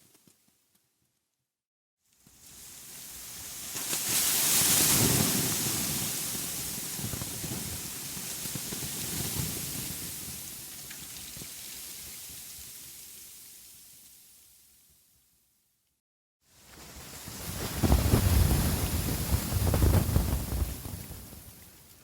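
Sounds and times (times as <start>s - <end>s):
rushing hiss with low rumble: 16.8s - 22.0s.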